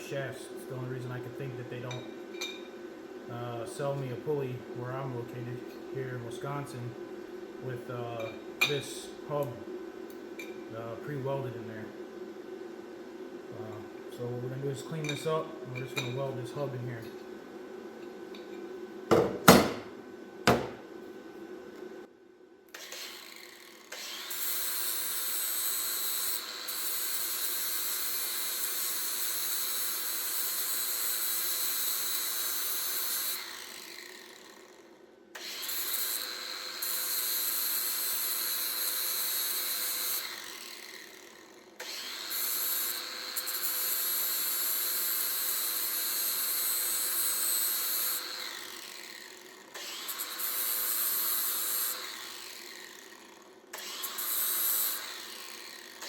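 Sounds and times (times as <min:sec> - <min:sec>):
electric grinder: 0:22.7 - 0:56.0.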